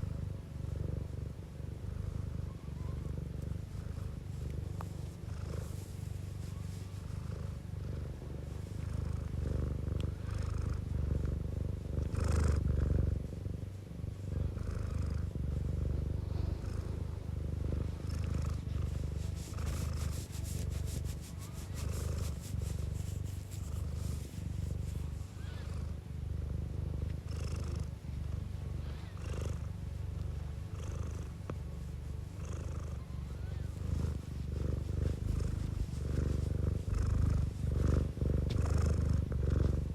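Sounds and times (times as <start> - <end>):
cat purring: 0.0 - 39.9
soft breathing: 16.0 - 17.2.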